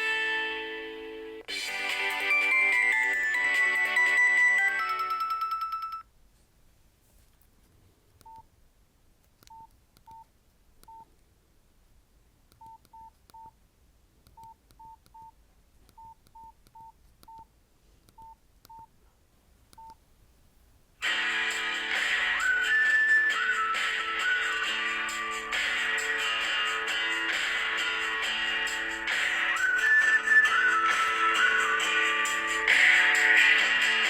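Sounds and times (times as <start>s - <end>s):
strummed guitar ringtone: 0.0s - 6.0s, 21.0s - 23.3s
polyphonic ringtone: 1.7s - 6.1s
keypad beeps: 9.5s - 11.1s, 12.6s - 13.5s, 14.4s - 15.4s, 16.0s - 17.5s, 18.2s - 18.9s.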